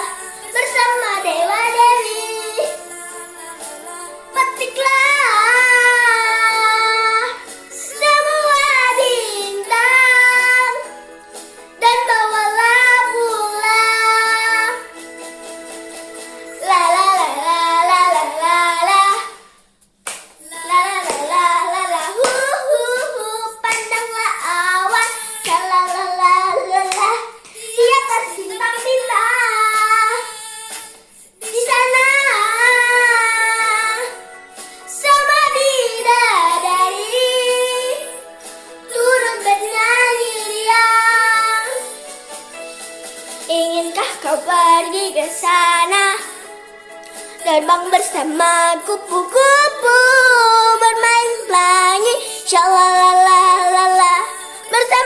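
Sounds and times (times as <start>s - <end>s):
girl singing: 0.0s - 11.0s, 11.8s - 14.9s, 16.6s - 19.6s, 20.4s - 34.2s, 34.9s - 38.2s, 38.9s - 42.0s, 43.5s - 46.5s, 47.4s - 55.0s
background music: 0.0s - 55.0s.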